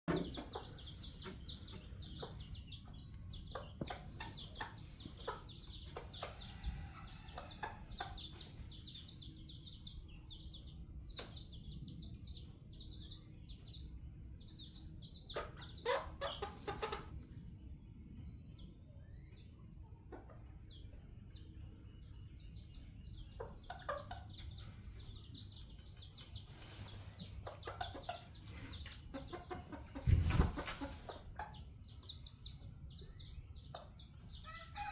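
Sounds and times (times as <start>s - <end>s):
chicks peeping: 0.0s - 34.9s
hens clucking: 0.1s - 9.4s, 14.6s - 17.4s, 22.7s - 34.9s.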